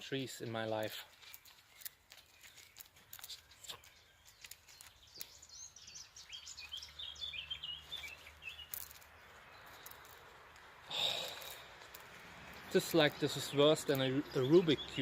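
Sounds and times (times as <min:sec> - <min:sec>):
small bird singing: 0:00.0 - 0:15.0.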